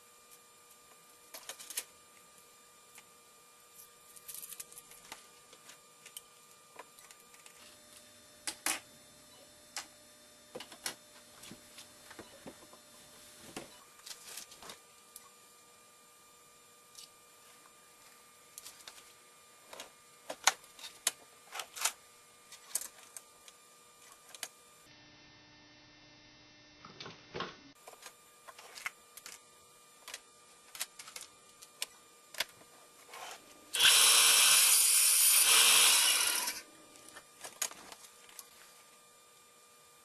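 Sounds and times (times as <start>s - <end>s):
power tool running: 33.7s - 37.0s.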